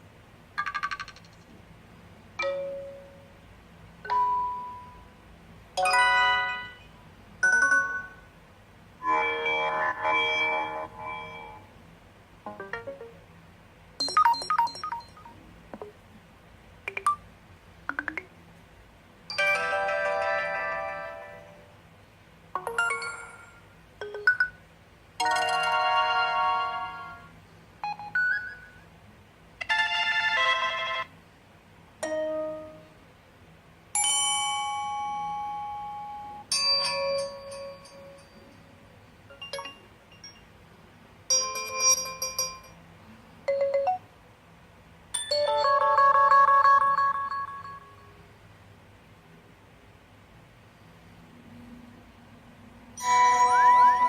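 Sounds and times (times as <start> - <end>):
phone ringtone chimes and jingles: 7.4 - 8.2, 19.3 - 21.2, 22.6 - 24.2, 25.2 - 27.3, 36.5 - 38.6, 39.3 - 40.5, 41.3 - 42.8, 45.2 - 48.2, 53.0 - 54.0.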